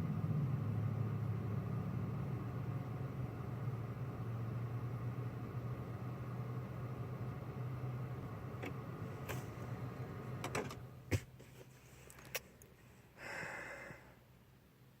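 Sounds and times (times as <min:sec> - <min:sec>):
low steady hum: 0:00.0 - 0:15.0
clicks and knocks inside car: 0:10.4 - 0:11.6.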